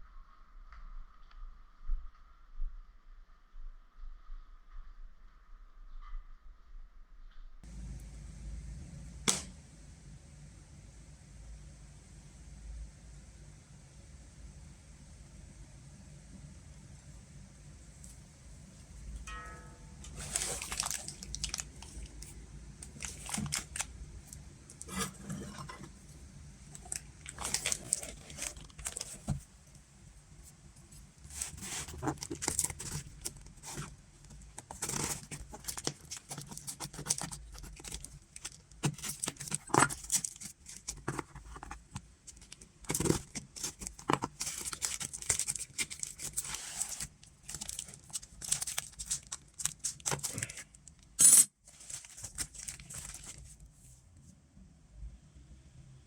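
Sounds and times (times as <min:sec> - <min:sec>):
packaging tearing and crinkling: 0:20.2 - 0:25.7, 0:26.8 - 0:29.4, 0:31.3 - 0:50.8, 0:51.7 - 0:53.6.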